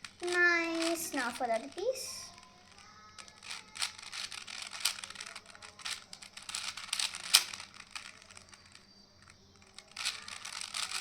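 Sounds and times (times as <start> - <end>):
puzzle cube clicking: 3.2 - 11.0.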